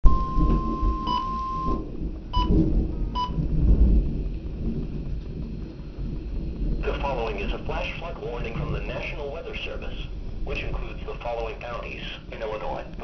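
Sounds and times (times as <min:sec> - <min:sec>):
short beeps: 0:00.0 - 0:01.8, 0:02.4 - 0:02.6, 0:03.2 - 0:03.4
steady warning alarm tone: 0:00.0 - 0:03.5
constant low rumble: 0:00.0 - 0:13.0.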